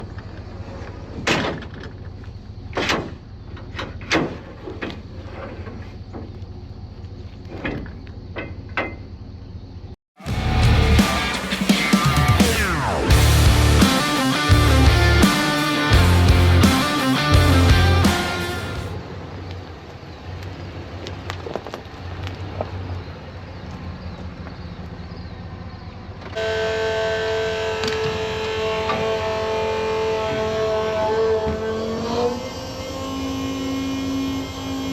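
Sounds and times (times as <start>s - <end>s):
music with held notes: 10.2s - 18.9s
vehicle engine humming: 10.3s - 34.9s.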